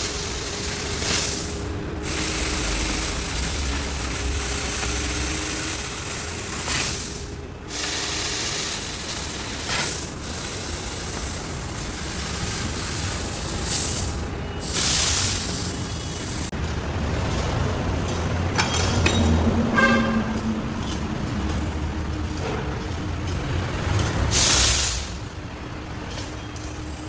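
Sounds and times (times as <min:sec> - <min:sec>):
cnc machining hiss: 0:00.0 - 0:16.5, 0:24.3 - 0:25.2.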